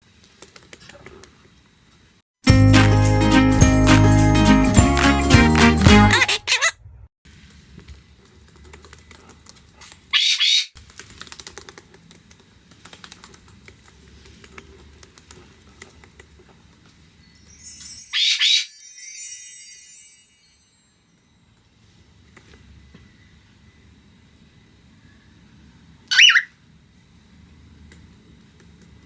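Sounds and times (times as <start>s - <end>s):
loud cockatiel calls: 10.2s - 10.8s, 18.2s - 18.7s, 26.1s - 26.6s
bird feet tapping and clicking: 10.8s - 16.6s.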